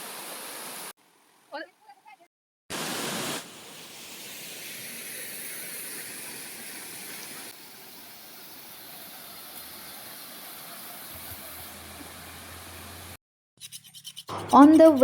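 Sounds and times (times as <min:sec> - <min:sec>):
waterfall rushing down rocks: 0:00.0 - 0:00.9.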